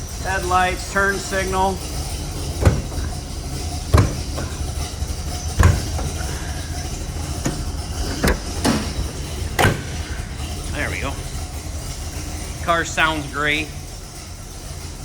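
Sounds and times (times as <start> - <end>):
car engine idling: 0.0 - 15.0
sharp knocks: 2.6 - 4.9, 5.5 - 6.2.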